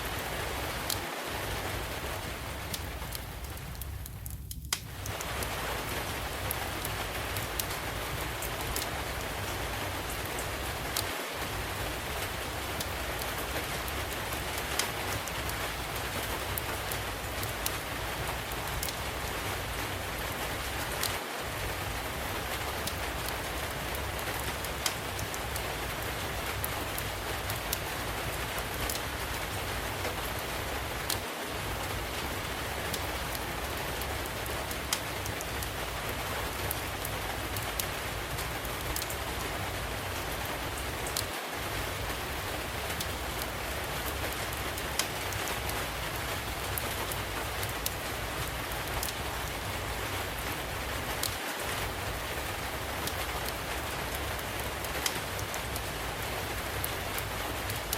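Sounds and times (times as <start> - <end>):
steady rain falling: 0.0 - 57.9
wood fire crackling: 0.0 - 57.9.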